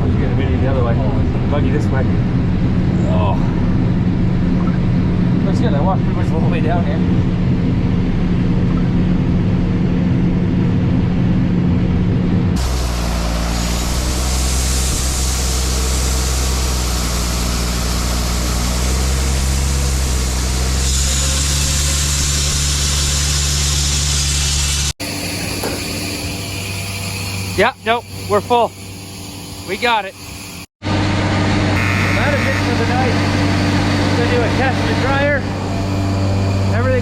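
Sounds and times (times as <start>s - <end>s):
diesel engines running: 0.0s - 37.0s
loud hiss: 12.6s - 30.7s.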